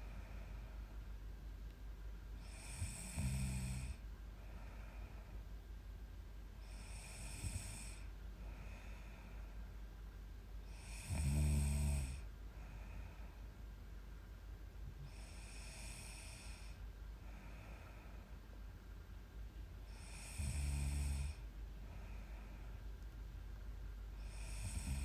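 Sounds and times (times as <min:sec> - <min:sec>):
soft breaths: 0:00.0 - 0:25.0
woman snoring: 0:02.4 - 0:04.0, 0:06.6 - 0:08.1, 0:10.7 - 0:12.3, 0:15.0 - 0:16.8, 0:19.9 - 0:21.4, 0:24.2 - 0:25.0.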